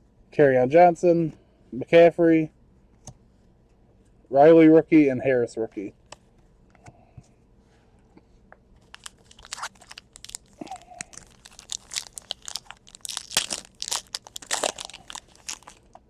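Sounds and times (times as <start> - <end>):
wrapper tearing and crinkling: 8.8 - 16.0.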